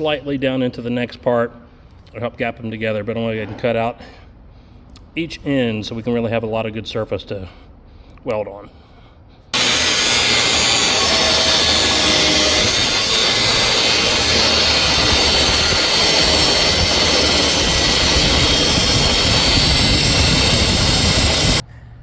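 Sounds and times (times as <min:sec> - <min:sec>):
angle grinder cutting steel: 0:09.6 - 0:21.6.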